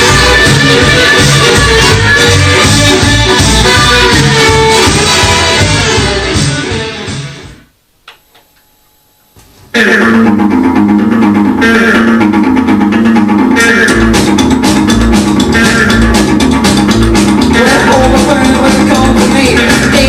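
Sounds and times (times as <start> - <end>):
low drum beats: 0.0 - 7.6, 13.0 - 20.0
rock and roll guitar and bass: 0.0 - 7.7, 9.7 - 20.0.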